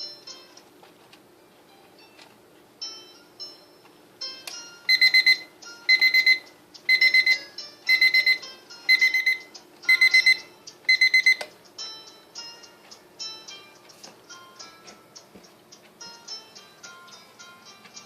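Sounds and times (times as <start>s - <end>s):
alarm clock beeping: 4.9s - 12.0s.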